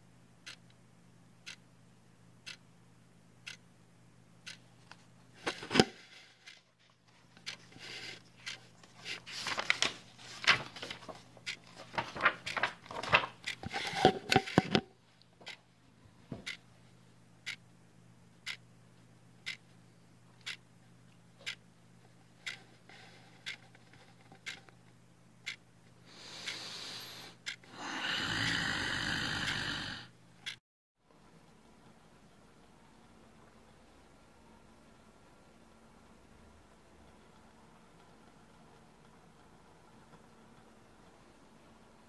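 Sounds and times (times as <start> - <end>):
steady low hum: 0.0 - 42.0
clock ticking: 0.4 - 0.8, 1.4 - 1.6, 2.4 - 2.6, 3.4 - 3.6, 4.4 - 4.7, 7.3 - 8.7, 10.4 - 14.8, 15.4 - 15.7, 16.4 - 16.7, 17.4 - 17.7, 18.4 - 18.6, 19.4 - 19.7, 20.4 - 20.7, 21.4 - 21.6, 22.4 - 24.8, 25.4 - 25.6, 27.4 - 27.7.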